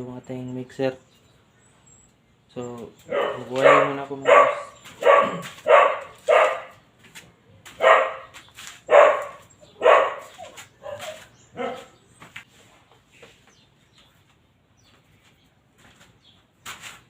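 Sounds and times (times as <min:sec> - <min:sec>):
dog barking: 0:03.1 - 0:06.8, 0:07.8 - 0:12.0.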